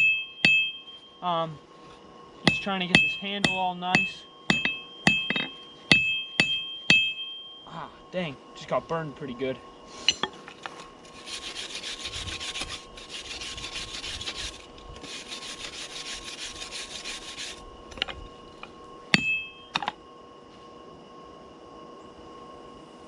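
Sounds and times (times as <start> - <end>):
sharp metal clinks: 2.5 - 7.8
hand tool scraping steel: 10.0 - 18.1.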